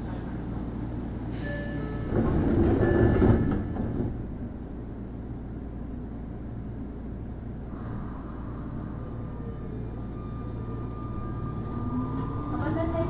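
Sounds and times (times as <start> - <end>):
subway car low hum: 0.0 - 13.0
rush of noise: 7.6 - 10.1.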